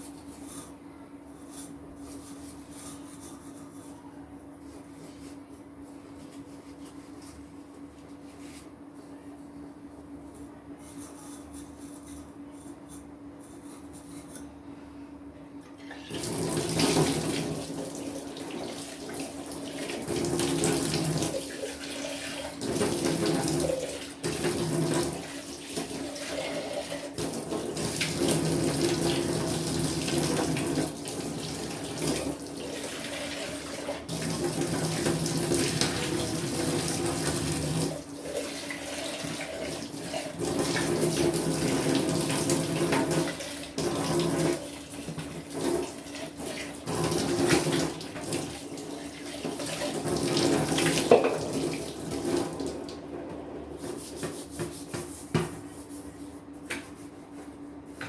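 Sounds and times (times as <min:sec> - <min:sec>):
tap water running into sink: 0:15.8 - 0:53.1.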